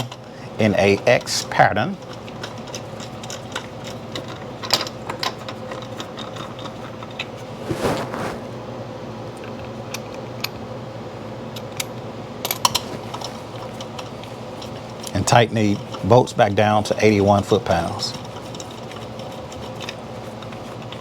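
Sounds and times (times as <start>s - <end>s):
brief swish: 7.5s - 8.6s.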